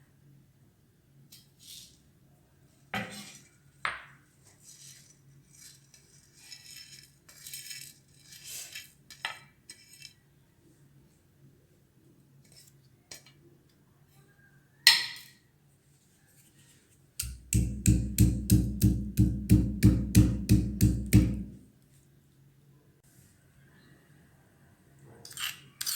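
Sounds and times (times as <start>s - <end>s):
kitchen utensils knocking: 17.2s - 21.6s.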